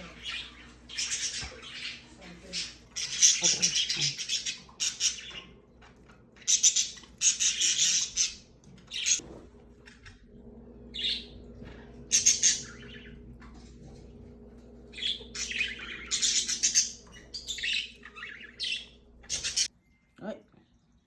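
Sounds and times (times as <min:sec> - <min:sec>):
lovebirds harsh raspy chirps: 0:00.0 - 0:05.6, 0:06.4 - 0:09.2, 0:12.1 - 0:13.2, 0:14.9 - 0:19.7.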